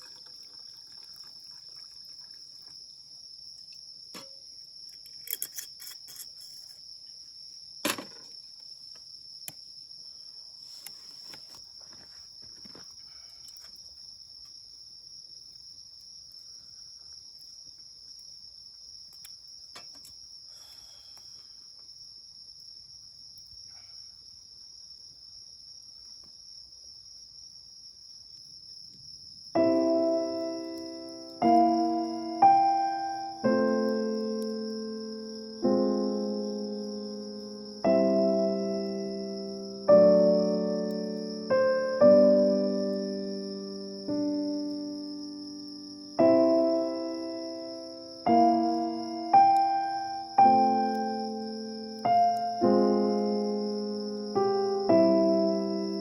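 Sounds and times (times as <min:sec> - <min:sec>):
crickets trilling: 0:00.0 - 0:56.0.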